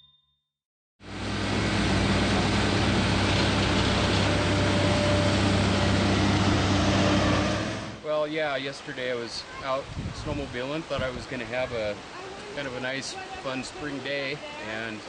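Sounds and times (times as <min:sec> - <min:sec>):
engine humming: 0:01.0 - 0:08.1
steady rushing noise: 0:01.1 - 0:08.2.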